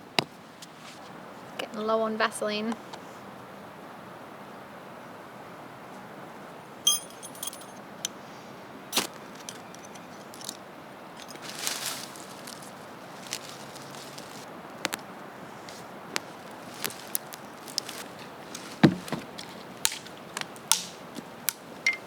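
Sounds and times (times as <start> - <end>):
ringing metallic clink: 6.9 - 7.8
small hard objects clinking: 6.9 - 7.8, 9.0 - 10.6, 11.2 - 15.0
steady hiss: 8.2 - 21.8
brief rustle: 11.2 - 15.0.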